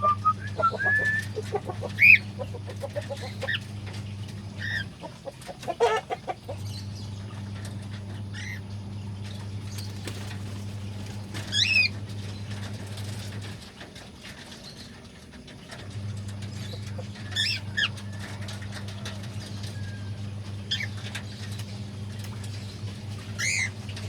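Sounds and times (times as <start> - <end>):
cockatiels chirping and whistling: 0.0 - 2.3, 11.4 - 11.9, 17.3 - 18.0, 20.7 - 21.2, 23.4 - 23.8
steady low hum: 0.0 - 13.8, 15.7 - 24.0.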